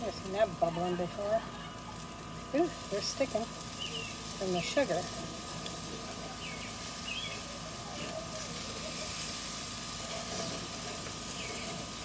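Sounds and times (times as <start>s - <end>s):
meat sizzling on a grill: 0.0s - 12.0s
bird chirps: 3.8s - 4.2s, 6.4s - 7.4s, 11.3s - 11.8s.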